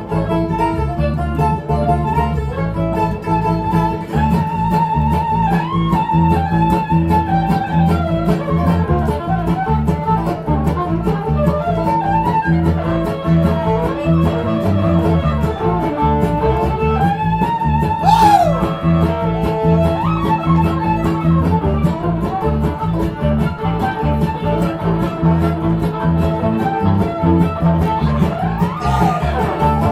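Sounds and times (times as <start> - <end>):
bluegrass band playing: 0.0 - 29.9
fiddle bowed notes: 0.0 - 29.9.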